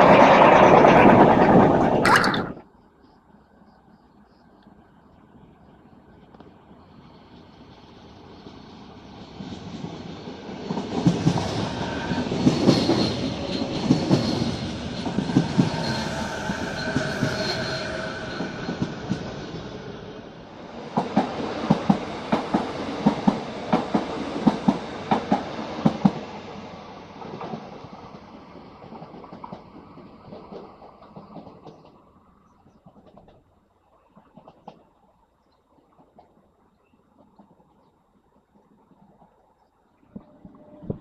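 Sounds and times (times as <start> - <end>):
train passing: 0.0 - 2.6, 5.2 - 33.2
wheels clacking over rail joints: 27.2 - 33.6.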